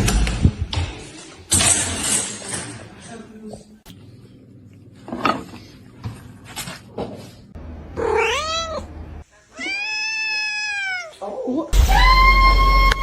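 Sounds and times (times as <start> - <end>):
cat meowing: 8.0 - 8.9, 9.5 - 11.4.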